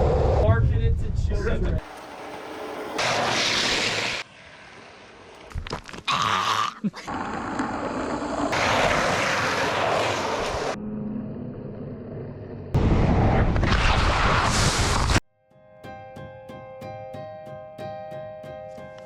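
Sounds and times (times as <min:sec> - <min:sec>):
rushing wind: 0:00.0 - 0:05.3, 0:07.7 - 0:15.2
skateboard wheels rolling: 0:01.8 - 0:06.0, 0:07.0 - 0:13.4.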